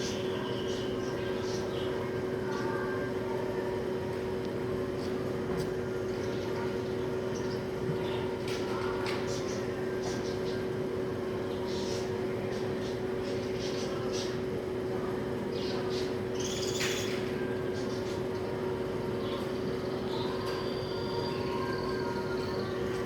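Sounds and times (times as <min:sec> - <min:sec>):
caged birds chirping: 0:00.0 - 0:04.2, 0:04.8 - 0:23.0
steady mechanical hum: 0:00.0 - 0:23.0.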